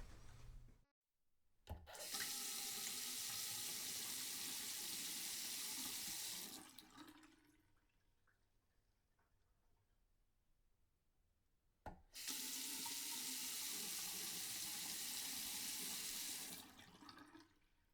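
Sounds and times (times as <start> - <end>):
tap water running into sink: 2.0 - 7.3, 12.2 - 17.5.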